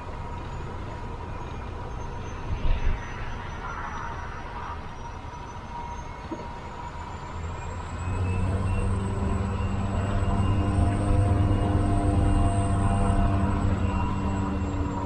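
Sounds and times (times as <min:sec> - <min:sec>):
faint high whine: 0:00.0 - 0:15.0
turboprop engine rumble: 0:00.0 - 0:15.0.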